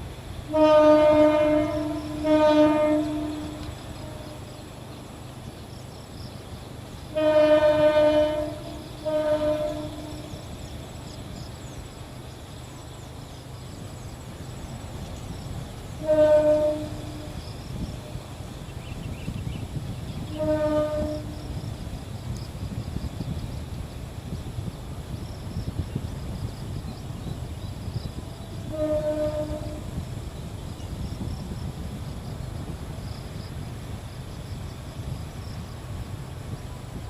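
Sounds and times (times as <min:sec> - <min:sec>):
locomotive horn blasts: 0:00.5 - 0:04.6, 0:07.1 - 0:10.5, 0:16.0 - 0:18.3, 0:20.2 - 0:21.6, 0:28.4 - 0:30.2.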